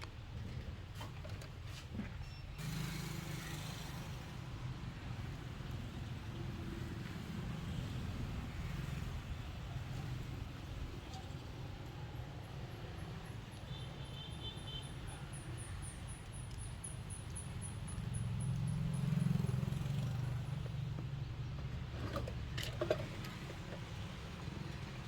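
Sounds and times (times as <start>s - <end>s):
road traffic rumble: 2.6s - 25.0s
vehicle passing: 17.7s - 21.0s.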